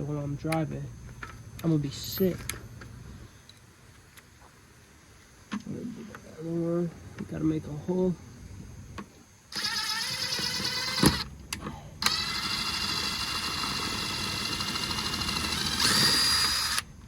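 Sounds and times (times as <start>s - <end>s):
power drill whining: 9.5s - 11.3s, 12.0s - 16.9s.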